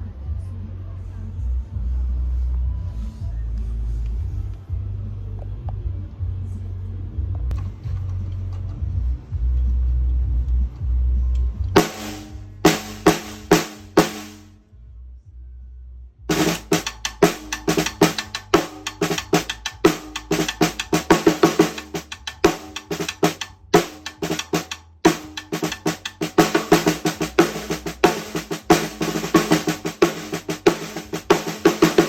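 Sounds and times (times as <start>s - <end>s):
snare drum rolls: 11.8s - 14.5s, 16.3s - 32.0s.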